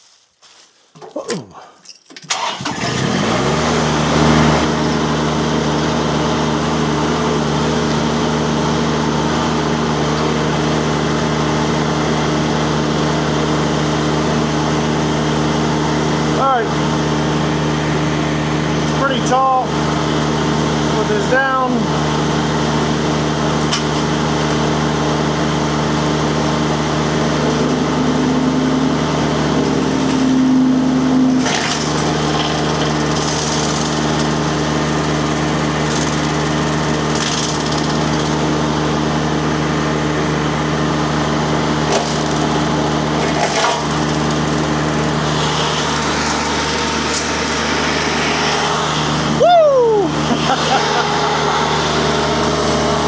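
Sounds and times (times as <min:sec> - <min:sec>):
wood splintering and cracking: 0:00.9 - 0:03.4, 0:31.2 - 0:38.5, 0:41.8 - 0:48.0
diesel engine running under load: 0:02.3 - 0:53.0
disc mulcher cutting tree: 0:02.4 - 0:53.0.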